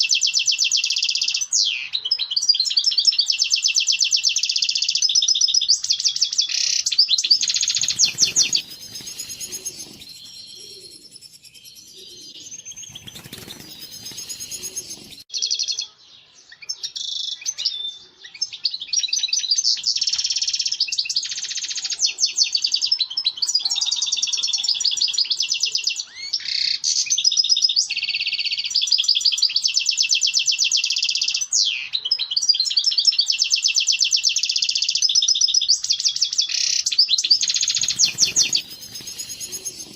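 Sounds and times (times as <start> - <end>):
goldfinch singing: 0.0 - 15.9, 28.7 - 39.9.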